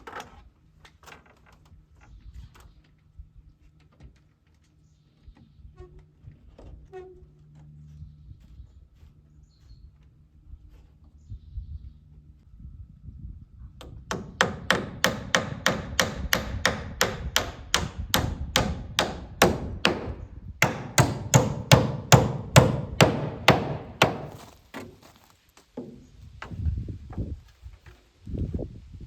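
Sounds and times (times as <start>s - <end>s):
hammer driving nails into wood: 14.1s - 25.0s.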